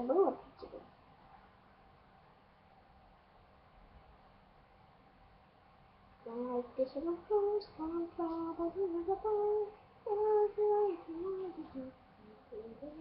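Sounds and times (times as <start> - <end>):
girl singing held notes: 6.2 - 13.0.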